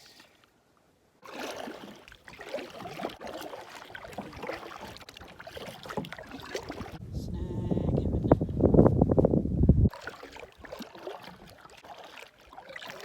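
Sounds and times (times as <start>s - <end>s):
water splashing against kayak: 1.2s - 7.0s, 9.9s - 13.0s.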